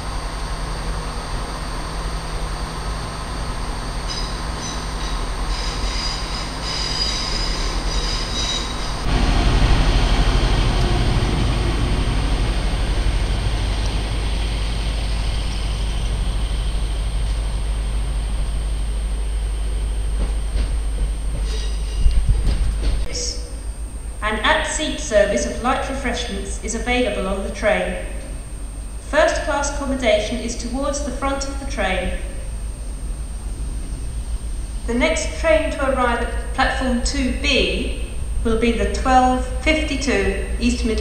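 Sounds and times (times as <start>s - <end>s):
train low rumble: 0.0s - 41.0s
train wheels squealing: 4.0s - 9.0s, 21.4s - 22.2s.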